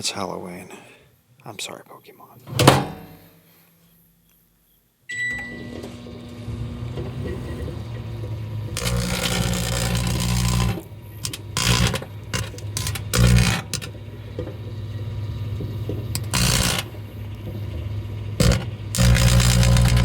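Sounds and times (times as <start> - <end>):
microwave transformer humming: 4.0 - 20.0
crackling and buzzing from arcing: 7.1 - 20.0.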